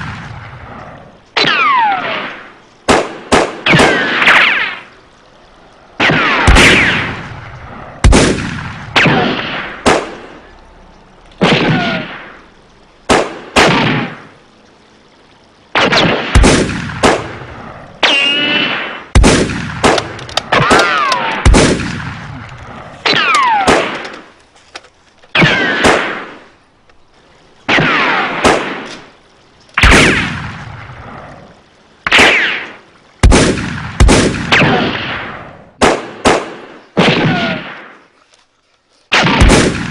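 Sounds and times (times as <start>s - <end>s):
gunshots cracking: 1.4s - 4.9s, 6.0s - 10.4s, 11.4s - 12.4s, 13.1s - 14.3s, 15.8s - 24.3s, 25.3s - 26.5s, 27.7s - 29.1s, 29.8s - 30.6s, 32.1s - 38.0s, 39.1s - 39.9s.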